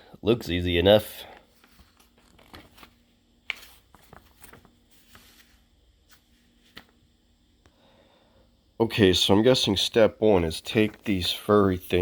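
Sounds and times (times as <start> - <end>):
low steady hum: 0.0 - 12.0
handling rustling: 1.4 - 7.0.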